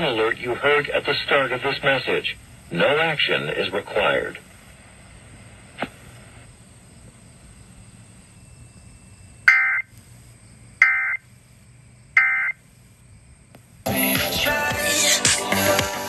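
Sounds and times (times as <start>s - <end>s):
buzzy alert data tones: 9.4s - 9.9s, 10.8s - 11.2s, 12.2s - 12.6s.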